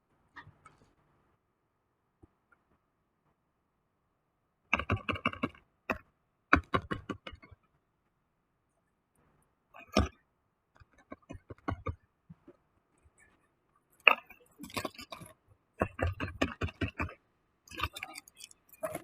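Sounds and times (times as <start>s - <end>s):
small hard objects clicking: 17.7s - 19.0s.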